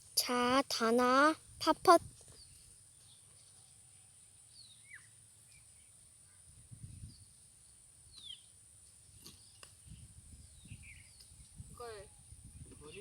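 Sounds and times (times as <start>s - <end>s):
steady high-pitched hiss: 0.0s - 13.0s
wind bumps on microphone: 1.5s - 2.2s, 6.5s - 7.3s, 9.8s - 13.0s
faint bird chirps: 2.3s - 7.3s.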